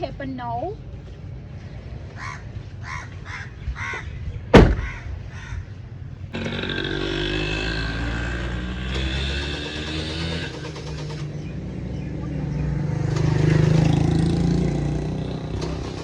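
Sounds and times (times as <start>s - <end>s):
crows cawing: 2.2s - 4.2s, 4.8s - 5.7s
sharp knock: 4.6s - 5.0s
car engine drone: 6.2s - 16.0s.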